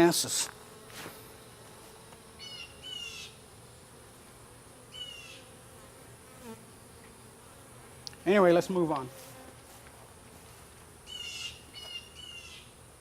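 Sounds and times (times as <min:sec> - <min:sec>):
honeybees buzzing: 0:00.0 - 0:13.0
bird calling: 0:02.4 - 0:03.4, 0:04.9 - 0:05.5, 0:11.1 - 0:12.7.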